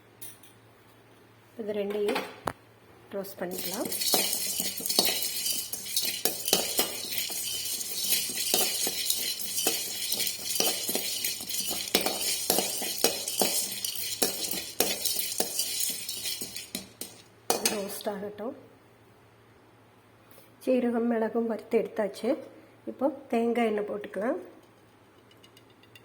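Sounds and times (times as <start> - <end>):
spoon clinking and scraping pan: 3.5 - 18.0.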